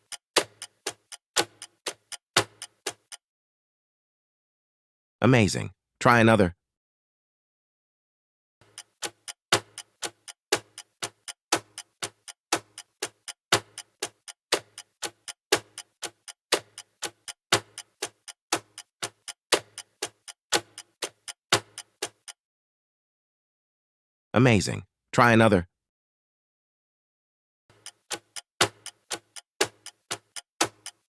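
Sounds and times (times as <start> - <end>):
rhythmic electronic clicks: 0.0 - 3.2, 8.6 - 22.4, 27.7 - 31.0.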